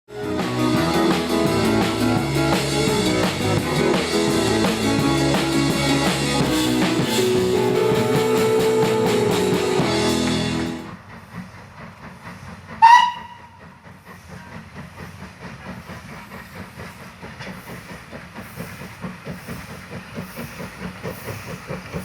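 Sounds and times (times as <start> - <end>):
rock music with drums and guitar: 0.1 - 10.9.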